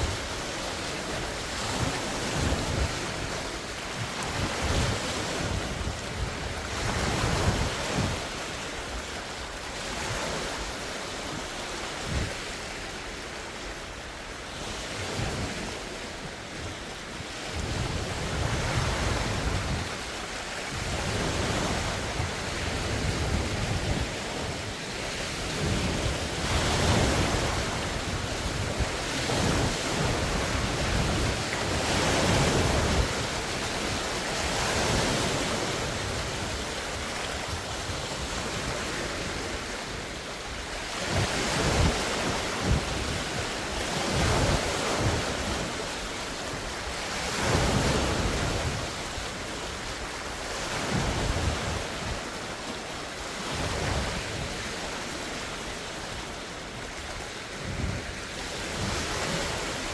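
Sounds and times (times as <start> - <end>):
wind buffeting microphone: 0.0 - 13.6, 14.2 - 59.9
waves breaking on shore: 0.0 - 59.9.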